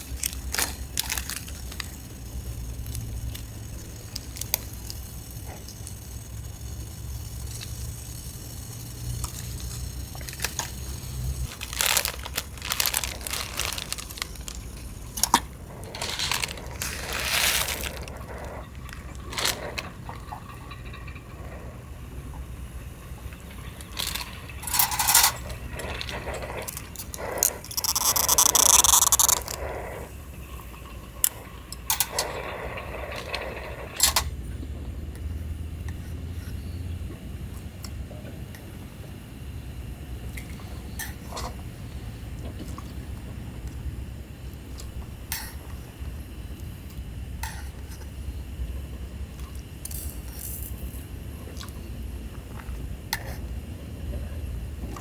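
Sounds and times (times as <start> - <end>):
small hard objects clinking: 0.0 - 6.0, 9.2 - 19.4, 26.6 - 29.6.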